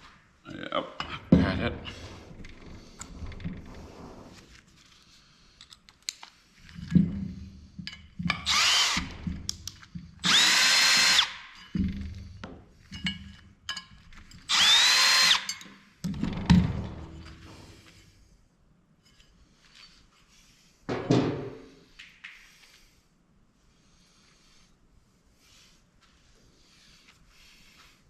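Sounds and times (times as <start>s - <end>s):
electric screwdriver motor whining: 8.5s - 9.1s, 10.2s - 11.3s, 14.5s - 15.5s.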